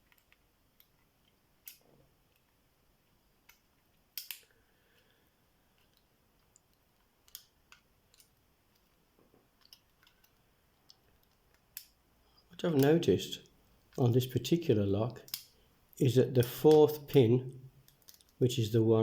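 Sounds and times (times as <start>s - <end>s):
lock pick clicks and taps: 0.0s - 2.5s, 5.7s - 8.9s, 15.2s - 15.6s.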